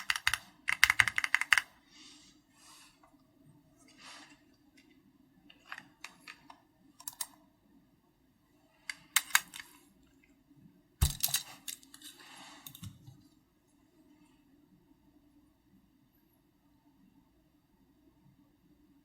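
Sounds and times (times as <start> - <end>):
mechanical keyboard keystrokes: 0.0 - 1.7.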